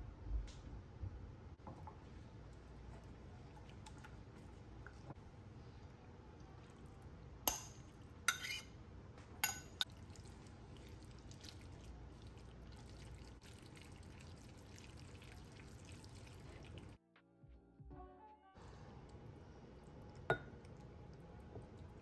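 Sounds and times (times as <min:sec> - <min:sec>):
tableware clinking: 0:07.5 - 0:08.7, 0:09.4 - 0:09.8, 0:20.3 - 0:20.5
music: 0:17.0 - 0:19.2.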